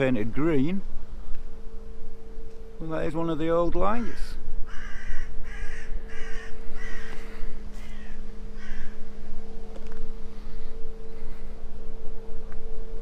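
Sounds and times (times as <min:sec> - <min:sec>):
steady low hum: 0:00.0 - 0:13.0
harsh bird calls: 0:04.0 - 0:09.1.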